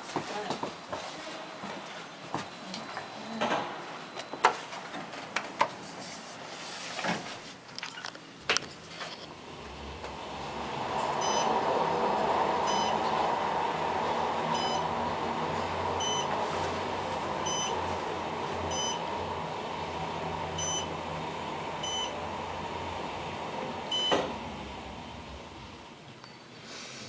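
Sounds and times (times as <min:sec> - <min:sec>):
elevator running hum: 0:08.6 - 0:26.4.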